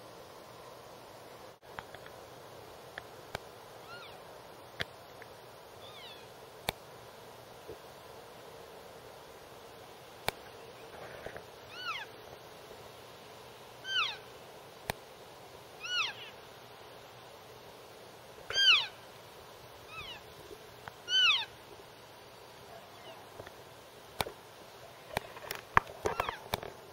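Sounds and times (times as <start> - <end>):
elk calves mewing squeals: 11.7 - 12.1, 13.8 - 14.2, 15.8 - 16.3, 18.5 - 19.0, 19.9 - 20.2, 21.1 - 21.5, 26.0 - 26.4.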